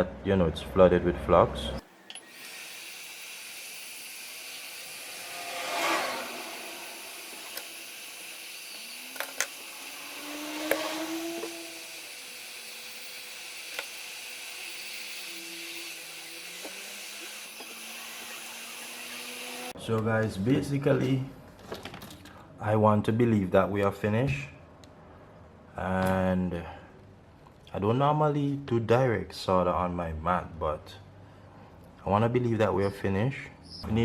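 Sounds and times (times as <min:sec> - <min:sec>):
flux sizzling under soldering iron: 0:02.0 - 0:19.8.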